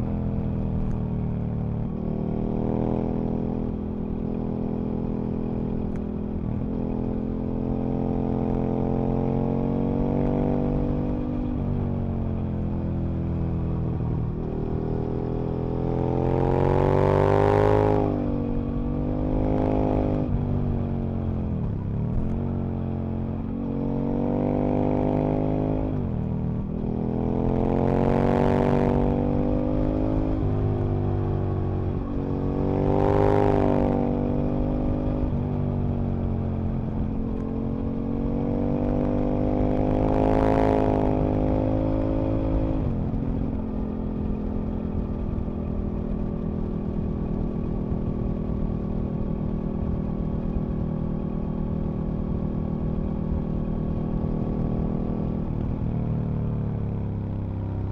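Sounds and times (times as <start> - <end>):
motorcycle engine revving: 13.7 - 20.8, 21.6 - 57.9.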